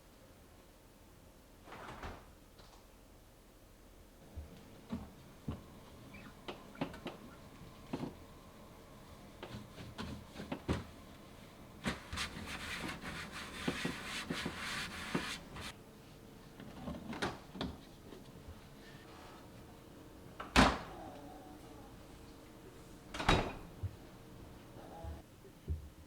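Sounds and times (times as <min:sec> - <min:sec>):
rustling and scraping: 0:11.8 - 0:15.8.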